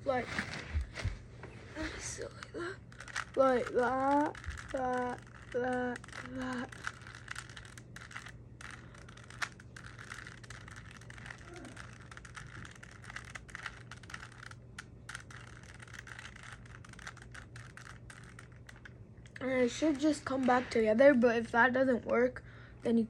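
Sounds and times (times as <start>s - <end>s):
puzzle cube clicking as turned: 2.0s - 19.4s.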